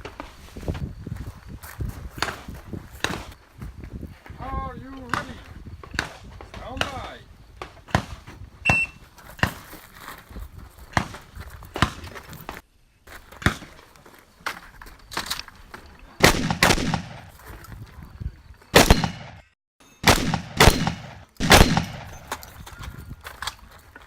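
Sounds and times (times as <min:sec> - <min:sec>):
shotgun shots: 0:16.2 - 0:17.3, 0:18.7 - 0:22.4.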